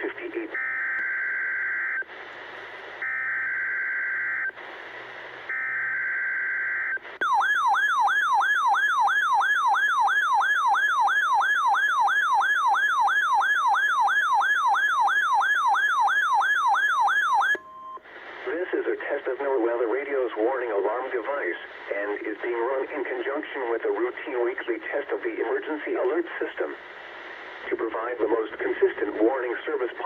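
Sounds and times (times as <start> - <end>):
siren-style rising alarm: 3.0 - 4.5, 5.5 - 17.6.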